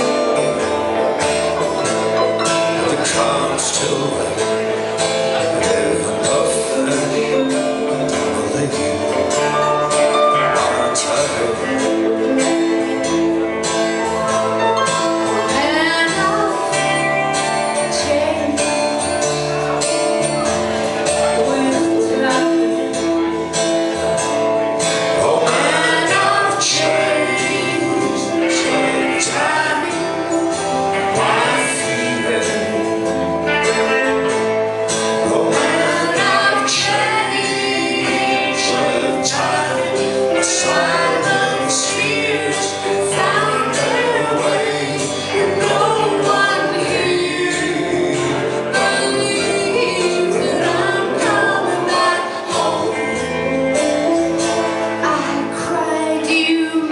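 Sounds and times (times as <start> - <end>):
folk band playing: 0.0 - 56.9
people singing: 0.0 - 56.9.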